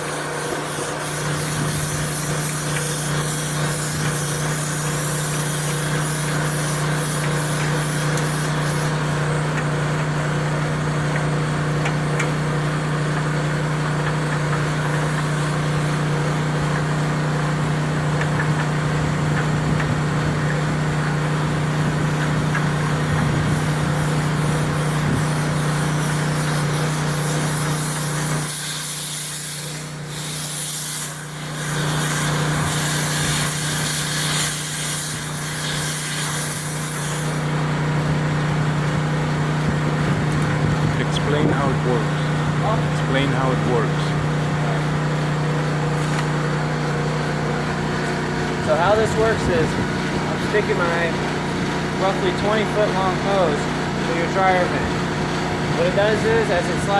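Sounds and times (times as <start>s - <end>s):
air hissing: 0.0s - 9.2s, 14.5s - 16.6s, 21.8s - 37.7s, 45.9s - 46.9s
hose rubbing inside duct: 0.0s - 9.2s, 21.8s - 37.7s
air compressor running: 0.0s - 56.9s.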